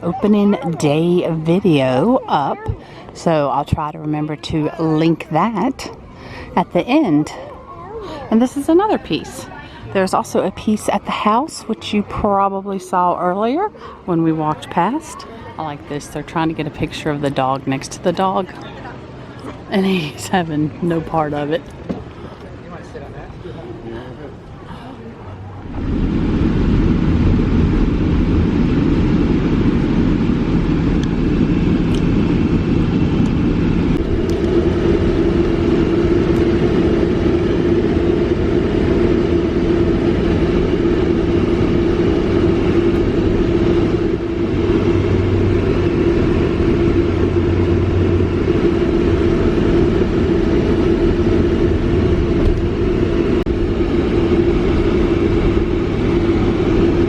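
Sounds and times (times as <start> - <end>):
motor vehicle engine rumble: 13.1 - 57.0.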